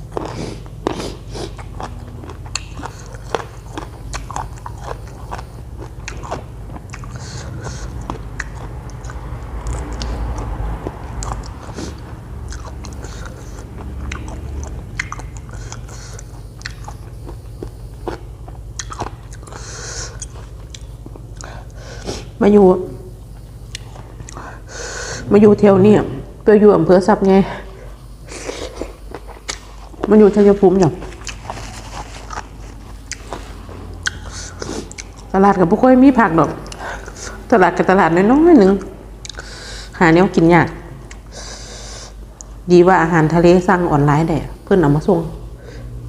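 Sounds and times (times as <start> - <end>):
person chewing crunchy food: 0.0 - 22.4, 23.2 - 25.2, 27.8 - 35.4, 38.8 - 39.6.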